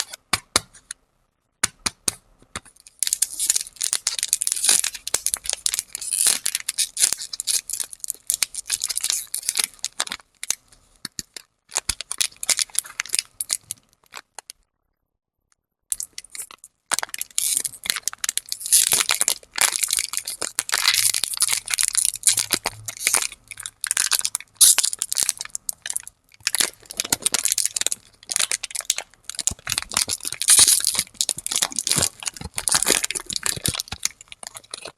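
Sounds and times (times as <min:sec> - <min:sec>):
plastic wrappers crinkling and tearing: 0:02.8 - 0:14.6, 0:15.9 - 0:34.9.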